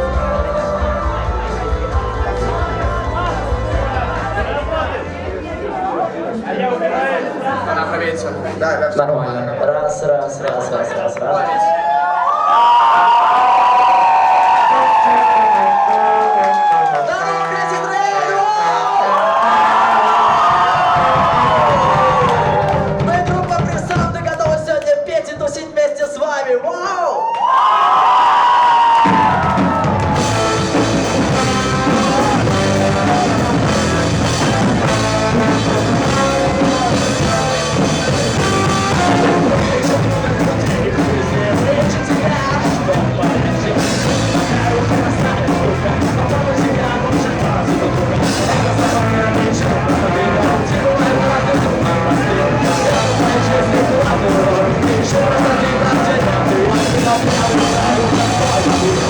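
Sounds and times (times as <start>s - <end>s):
rock band playing live: 0.0s - 5.7s, 20.3s - 24.2s, 29.0s - 59.0s
person singing: 0.0s - 5.8s, 29.0s - 59.0s.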